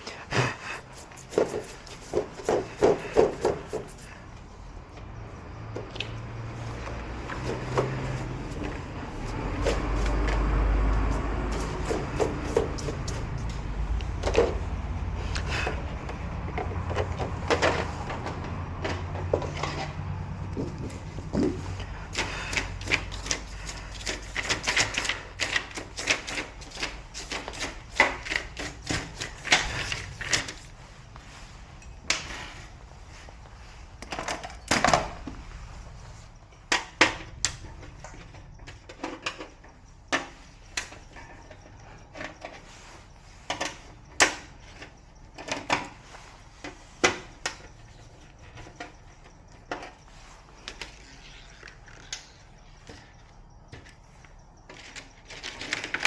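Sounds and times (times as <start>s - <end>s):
tools clicking and knocking: 21.4s - 30.7s.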